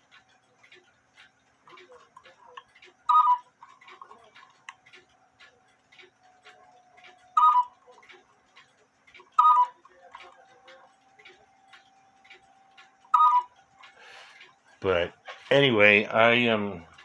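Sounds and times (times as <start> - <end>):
clock ticking: 0.0 - 17.0
cuckoo clock calls: 1.7 - 5.0, 5.9 - 8.3, 9.1 - 17.0.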